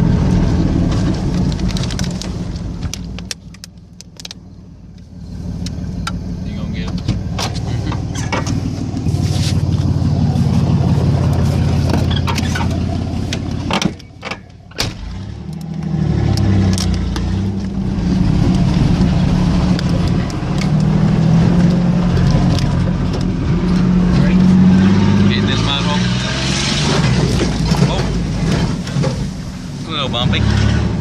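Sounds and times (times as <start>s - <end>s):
pickup truck engine running: 0.0s - 15.8s, 16.4s - 24.4s.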